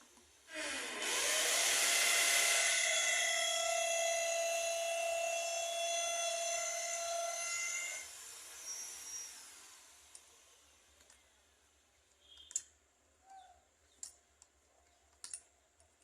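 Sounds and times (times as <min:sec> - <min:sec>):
electric pump motor whining: 0:00.5 - 0:10.1.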